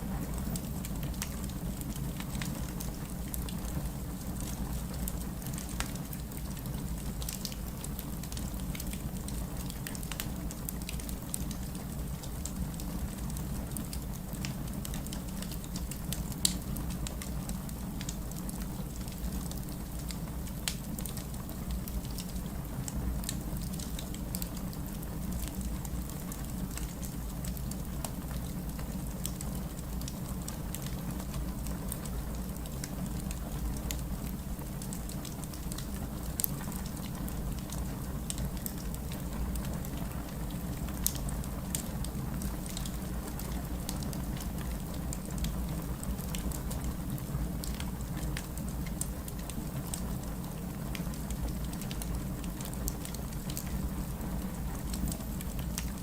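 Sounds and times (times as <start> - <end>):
wood fire crackling: 0.2 - 56.0.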